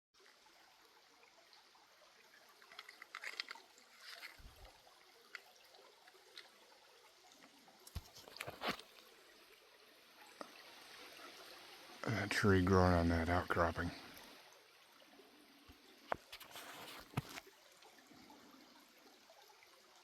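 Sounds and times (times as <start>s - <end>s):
creek water trickling: 0.2s - 20.0s
water splashes and knocks: 16.0s - 17.5s.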